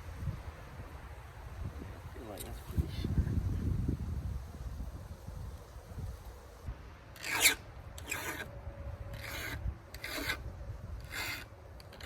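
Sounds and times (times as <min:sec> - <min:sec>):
file rasping on chainsaw chain: 0:07.2 - 0:08.5, 0:09.1 - 0:10.4, 0:11.0 - 0:12.0.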